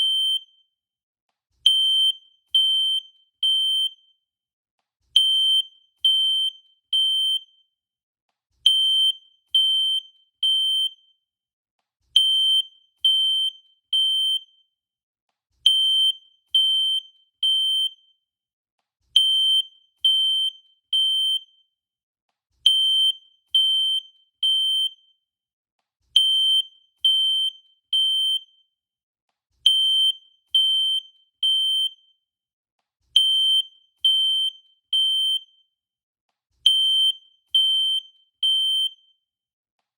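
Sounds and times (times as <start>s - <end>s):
fire alarm beeps: 0.0s - 0.8s, 1.7s - 4.2s, 5.2s - 7.7s, 8.7s - 11.2s, 12.2s - 14.8s, 15.7s - 18.2s, 19.2s - 21.8s, 22.7s - 25.2s, 26.2s - 28.8s, 29.7s - 32.2s, 33.2s - 35.8s, 36.7s - 39.3s.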